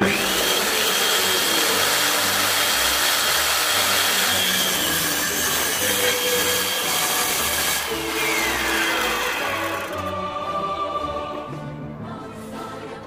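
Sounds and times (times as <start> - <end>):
power tool whining: 0.0 - 10.2.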